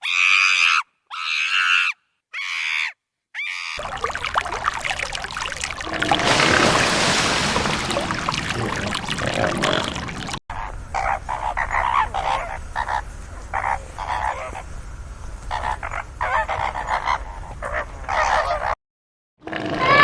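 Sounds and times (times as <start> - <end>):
animal croaking or honking: 5.8 - 10.4.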